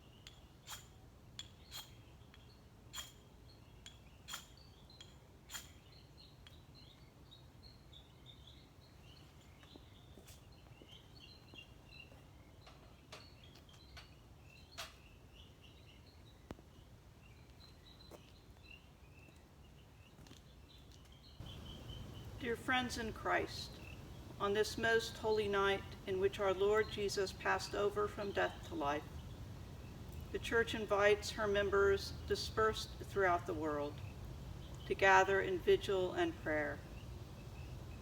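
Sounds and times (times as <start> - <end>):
steady low hum: 21.4 - 38.0.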